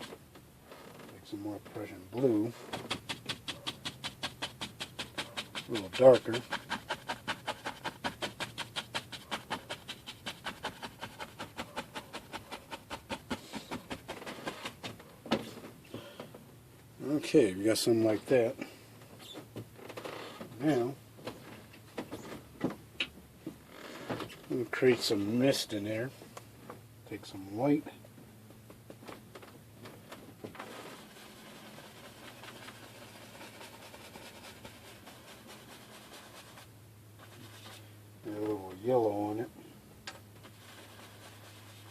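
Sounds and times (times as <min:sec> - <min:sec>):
brush scrubbing on canvas: 0:02.2 - 0:14.8, 0:30.6 - 0:39.3, 0:40.4 - 0:41.9
brush tapping on canvas: 0:02.7 - 0:14.9.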